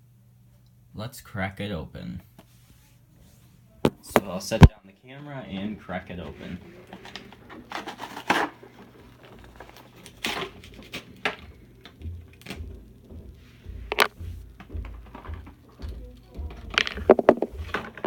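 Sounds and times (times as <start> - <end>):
plastic packaging crackling: 6.8 - 12.7
dull handling thumps: 10.6 - 18.0.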